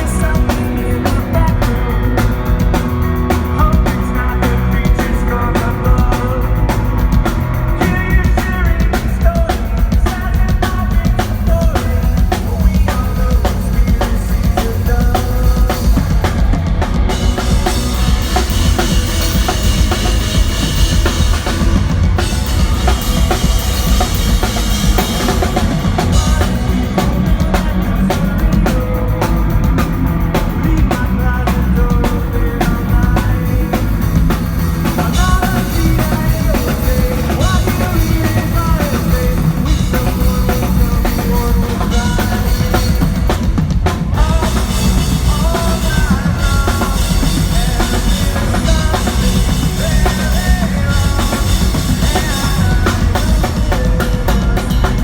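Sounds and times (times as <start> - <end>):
driving drum kit: 0.0 - 55.0
pop-punk band playing: 0.0 - 55.0.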